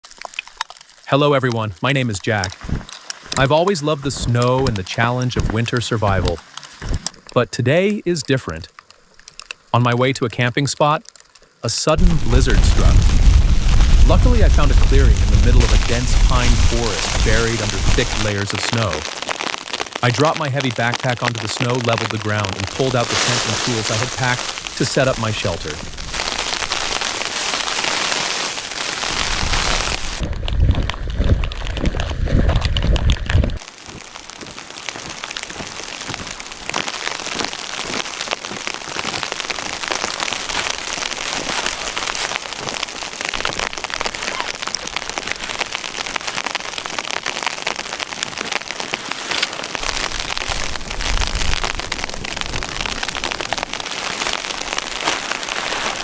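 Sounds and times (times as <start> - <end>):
snow pattering: 0.0 - 7.3, 10.6 - 56.0
deep wind rumble: 12.0 - 18.2, 29.1 - 33.6
blizzard wind hissing: 12.0 - 18.9, 22.8 - 30.2.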